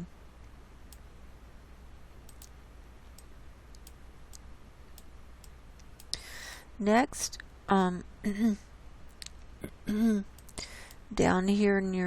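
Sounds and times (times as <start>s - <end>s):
faint low room hum: 0.0s - 12.0s
computer mouse clicking: 0.9s - 1.1s, 2.2s - 6.2s, 10.3s - 11.0s.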